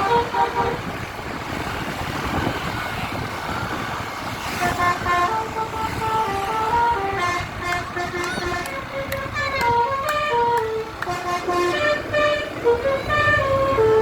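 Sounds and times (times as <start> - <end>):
bus horn playing melody: 0.0 - 0.9, 4.5 - 14.0
engine and road noise: 0.0 - 14.0.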